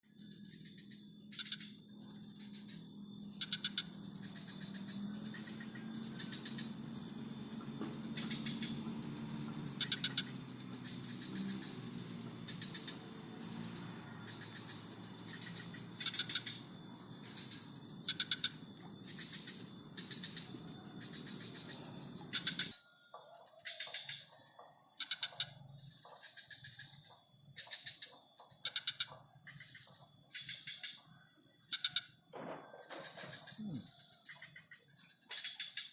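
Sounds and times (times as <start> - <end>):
animal rapid clicking calls: 9.8 - 11.7, 14.3 - 16.6, 25.0 - 25.6.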